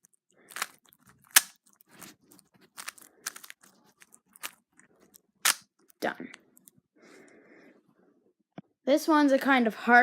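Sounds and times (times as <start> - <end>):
puzzle cube clacking plastic: 0.5 - 4.8, 5.4 - 5.6.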